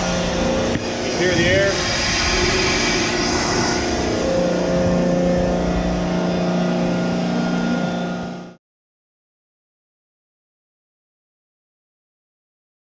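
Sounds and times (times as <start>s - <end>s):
compressed air rushing from hose: 0.0s - 6.1s
air compressor humming: 0.0s - 8.6s.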